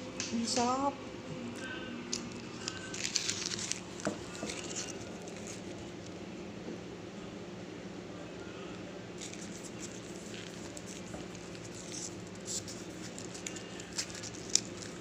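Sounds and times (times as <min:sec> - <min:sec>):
steady low hum: 0:00.0 - 0:15.0
snack crackling and clicking: 0:01.6 - 0:06.2, 0:09.2 - 0:15.0.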